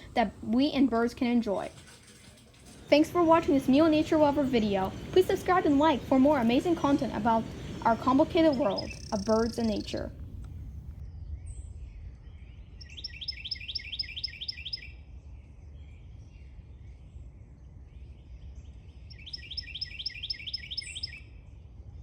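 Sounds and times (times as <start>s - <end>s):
songbird singing: 0.0s - 10.9s, 11.9s - 15.0s, 17.9s - 21.4s
low background rumble: 0.0s - 18.0s.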